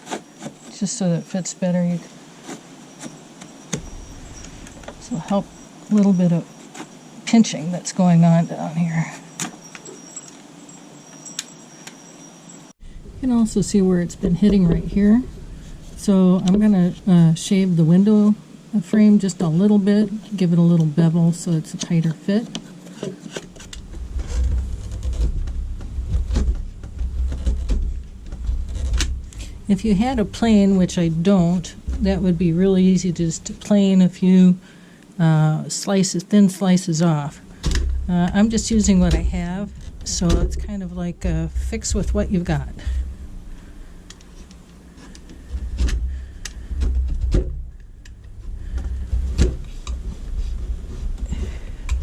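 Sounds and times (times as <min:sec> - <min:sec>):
handling knocks: 0:02.5 - 0:06.2, 0:22.5 - 0:33.9, 0:37.4 - 0:52.0
steady low rumble: 0:03.7 - 0:06.4, 0:12.7 - 0:22.5, 0:23.3 - 0:35.5, 0:37.0 - 0:52.0.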